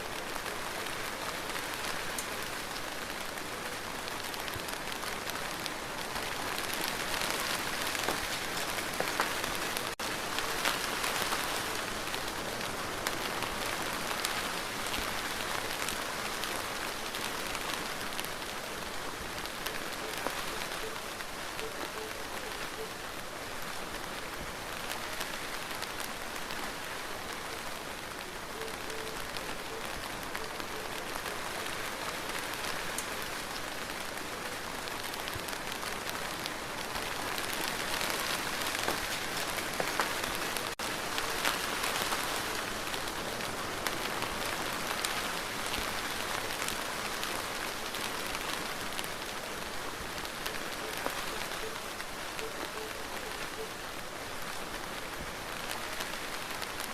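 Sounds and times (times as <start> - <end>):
steady rain falling: 0.0 - 56.9
raindrops ticking close by: 0.1 - 56.9.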